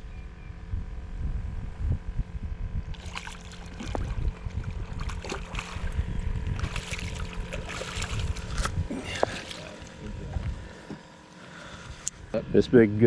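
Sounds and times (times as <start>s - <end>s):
boat motor hum: 0.0s - 13.0s
water splashing: 3.0s - 10.1s.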